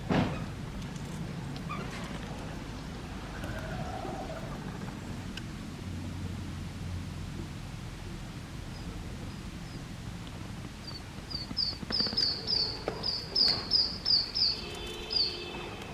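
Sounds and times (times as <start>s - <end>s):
small bird chirping: 10.8s - 15.5s.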